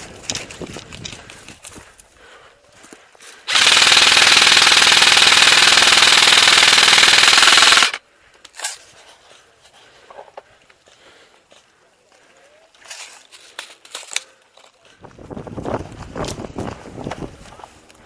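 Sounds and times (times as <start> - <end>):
airsoft gun full-auto burst: 3.5 - 8.0.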